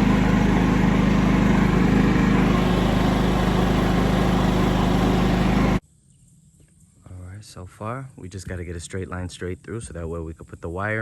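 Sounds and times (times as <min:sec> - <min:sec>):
small engine running steadily: 0:00.0 - 0:05.8.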